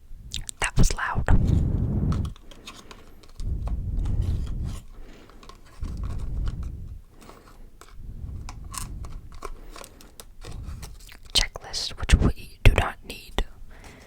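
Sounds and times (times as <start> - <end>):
paper and plastic crackling: 2.3 - 3.5, 4.7 - 11.5.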